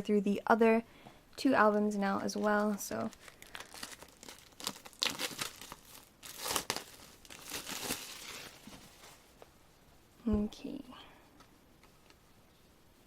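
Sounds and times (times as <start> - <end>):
plastic wrapping crinkling and tearing: 2.3 - 9.4.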